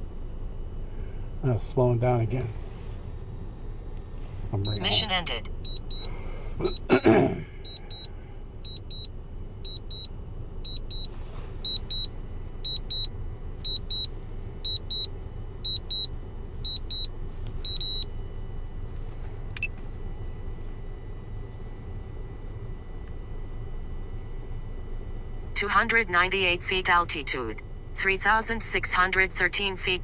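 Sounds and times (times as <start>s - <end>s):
steady low hum: 0.0s - 30.0s
short high-pitched beeps: 4.6s - 6.9s, 7.7s - 8.1s, 9.7s - 10.1s, 10.7s - 12.1s, 12.7s - 13.1s, 13.7s - 14.1s.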